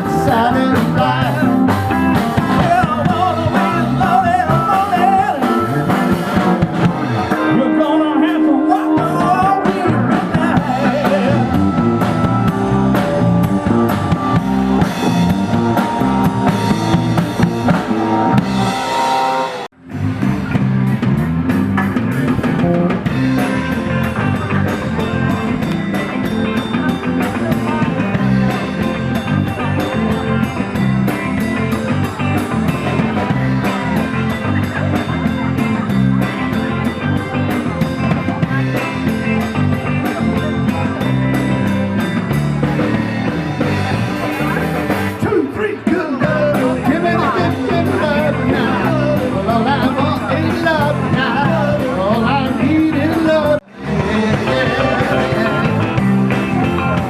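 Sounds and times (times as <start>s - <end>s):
rock band playing: 0.0s - 57.0s.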